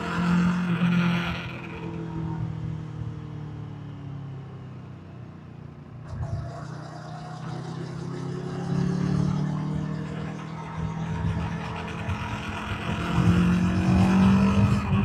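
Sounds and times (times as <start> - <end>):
motorcycle engine revving: 0.0 - 2.6, 6.0 - 15.0.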